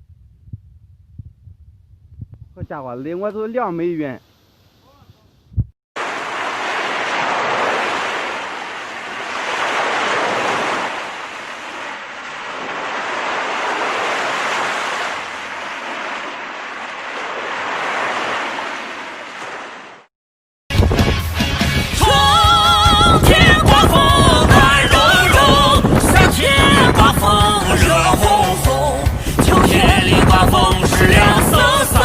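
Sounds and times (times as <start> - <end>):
wind-driven rain rushing: 6.0 - 20.0, 22.0 - 32.0.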